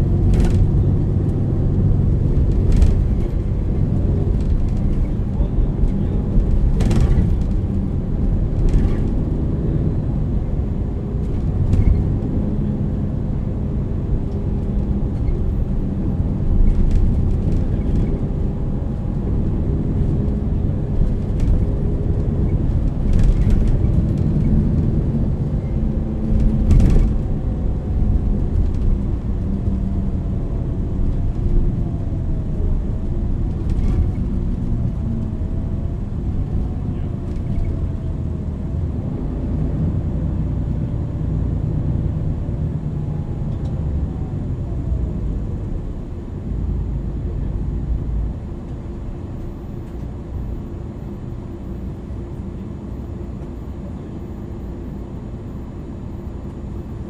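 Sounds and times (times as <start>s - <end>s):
bus engine low rumble: 0.0s - 57.0s.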